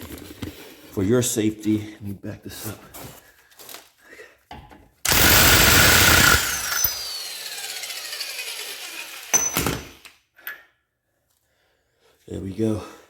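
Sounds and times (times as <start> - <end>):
motor winding down whine: 5.1 - 9.4
impact wrench hammering: 5.1 - 10.1.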